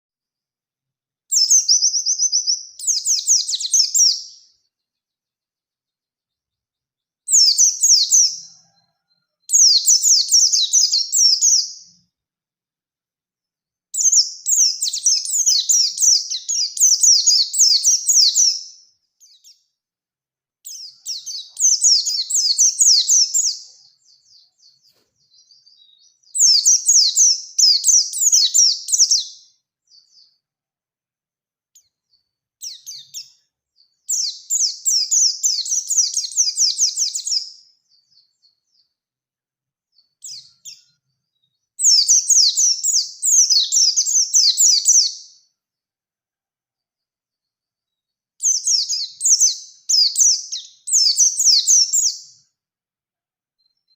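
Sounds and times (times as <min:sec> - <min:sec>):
bird warbling song: 0:01.3 - 0:05.2, 0:06.3 - 0:12.0, 0:13.9 - 0:19.6, 0:20.6 - 0:30.4, 0:31.8 - 0:39.0, 0:39.9 - 0:45.4, 0:48.4 - 0:52.3.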